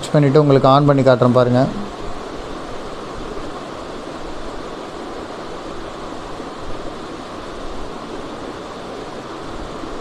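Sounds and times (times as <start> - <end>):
steady rushing noise: 0.0 - 10.0.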